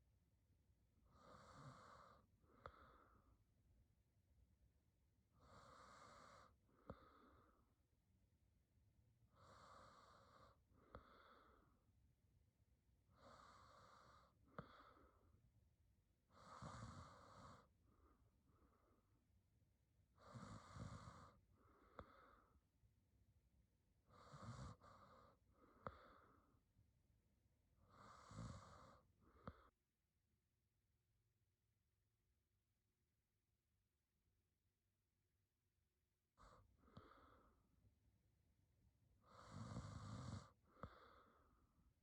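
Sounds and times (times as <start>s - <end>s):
woman breathing with soft snore: 1.0s - 3.5s, 5.3s - 7.9s, 9.2s - 11.9s, 12.9s - 15.5s, 16.1s - 19.4s, 20.1s - 22.8s, 24.0s - 26.8s, 27.7s - 29.9s, 36.3s - 37.8s, 39.1s - 42.0s.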